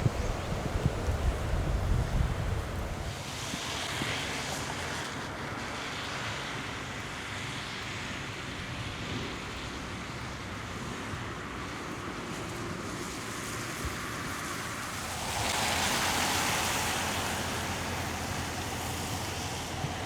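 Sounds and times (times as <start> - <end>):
wind rumble on microphone: 0.0 - 5.2.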